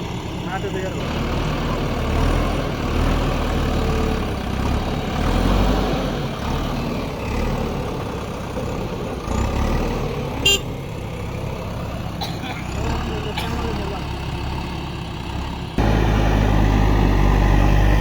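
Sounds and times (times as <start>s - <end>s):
diesel engine under load: 0.0s - 18.0s.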